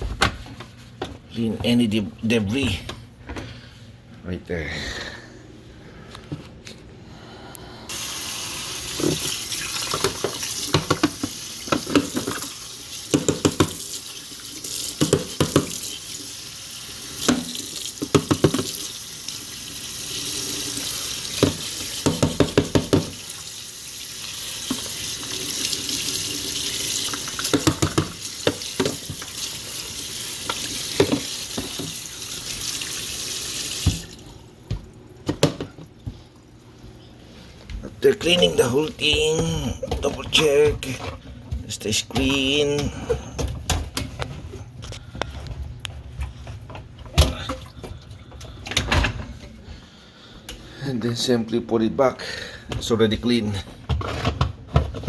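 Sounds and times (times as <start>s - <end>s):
water running from a tap: 7.9s - 34.8s
filter knocking and clattering: 21.4s - 23.2s, 27.4s - 29.2s.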